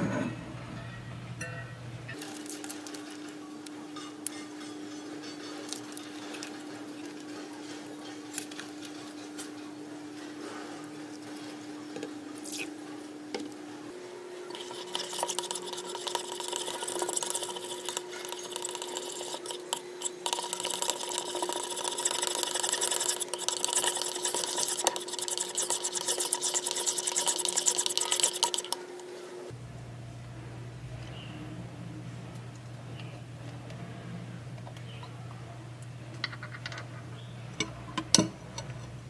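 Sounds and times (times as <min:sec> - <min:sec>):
slime squishing in a bowl: 0:14.6 - 0:28.8.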